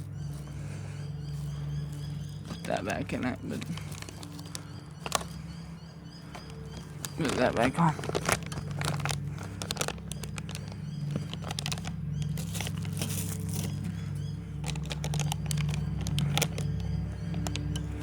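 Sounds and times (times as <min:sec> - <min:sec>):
steady low hum: 0:00.0 - 0:18.0
parts clicking and rattling: 0:02.3 - 0:18.0.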